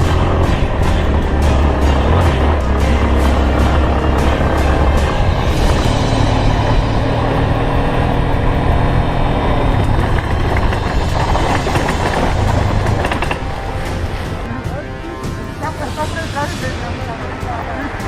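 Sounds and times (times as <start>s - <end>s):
motorcycle engine running: 0.0s - 15.5s.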